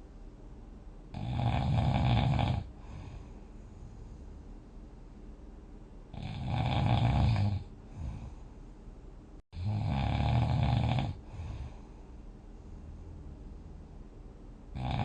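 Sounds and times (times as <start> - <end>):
person snoring: 1.1 - 3.4, 6.1 - 8.4, 9.6 - 11.9, 14.7 - 15.0.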